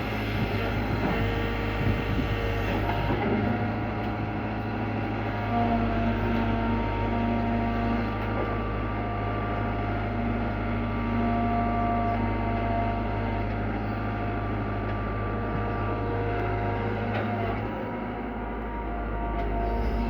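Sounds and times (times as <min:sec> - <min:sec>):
hydraulic whine: 0:00.0 - 0:03.9, 0:17.1 - 0:20.0
excavator diesel engine running: 0:00.0 - 0:20.0.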